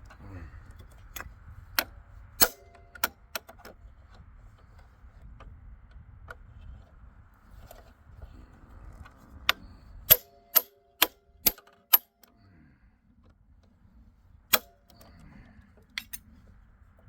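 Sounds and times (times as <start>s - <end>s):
hammer striking steel tool: 10.1s - 12.1s, 14.5s - 14.8s.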